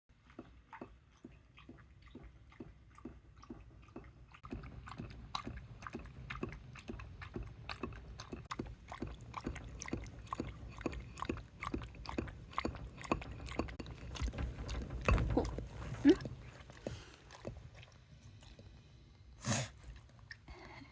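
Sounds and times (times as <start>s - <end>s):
dog lapping water: 0.1s - 20.8s.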